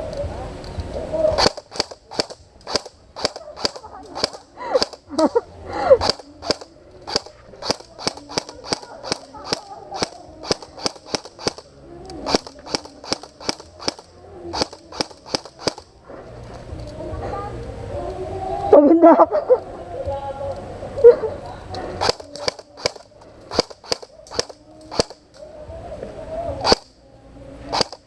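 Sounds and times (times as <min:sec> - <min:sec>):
airsoft gun shots: 0:01.4 - 0:05.3, 0:06.0 - 0:15.9, 0:22.0 - 0:25.2, 0:26.6 - 0:26.9, 0:27.7 - 0:28.0.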